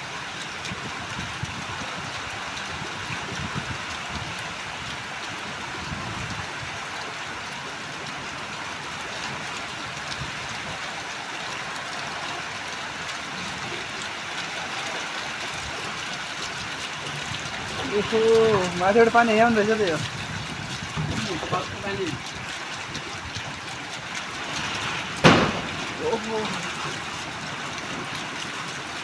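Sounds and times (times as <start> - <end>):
heavy rain pouring: 0.0 - 29.0
raindrop ticks: 13.9 - 29.0
low rumbles: 24.3 - 28.1.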